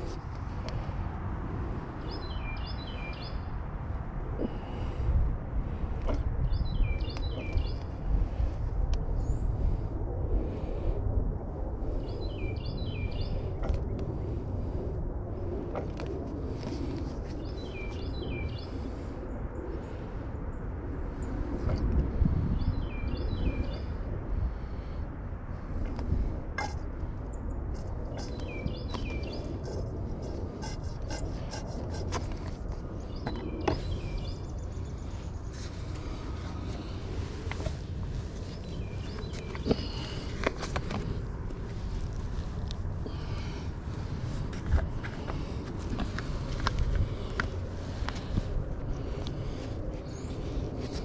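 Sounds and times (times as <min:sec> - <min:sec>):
steady low rumble: 0:00.0 - 0:51.0
songbird singing: 0:02.0 - 0:03.6, 0:06.1 - 0:08.0, 0:12.0 - 0:13.8, 0:16.9 - 0:18.9, 0:22.4 - 0:24.0, 0:26.6 - 0:41.9.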